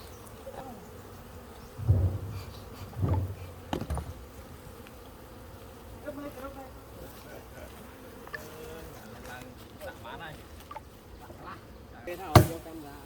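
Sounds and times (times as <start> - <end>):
bees buzzing: 0.0 - 13.0
low bumps: 1.7 - 4.8.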